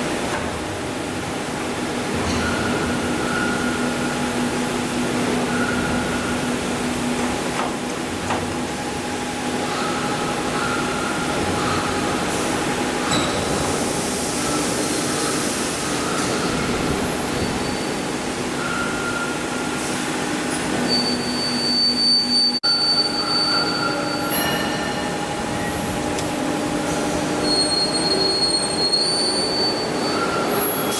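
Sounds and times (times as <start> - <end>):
high squealing tones: 20.9 - 30.9.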